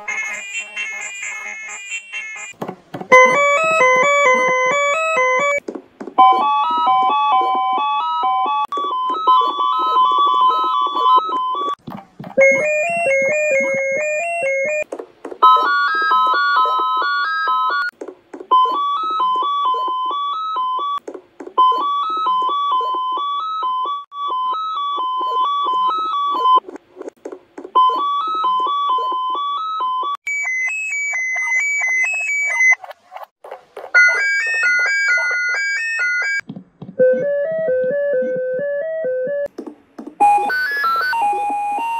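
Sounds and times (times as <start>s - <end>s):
computer error beeping melodies: 3.1s - 5.6s, 12.4s - 14.8s.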